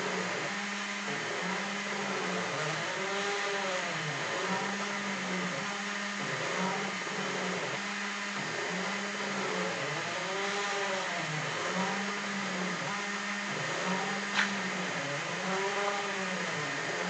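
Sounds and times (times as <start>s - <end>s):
milling spindle whirring: 0.0s - 17.0s
stepper motors humming: 0.0s - 17.0s
sharp click: 14.3s - 14.6s.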